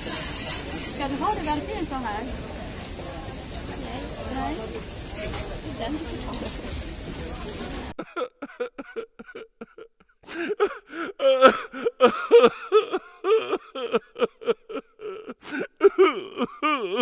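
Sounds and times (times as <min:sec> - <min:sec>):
person making wordless vocal sounds: 0:08.0 - 0:17.0.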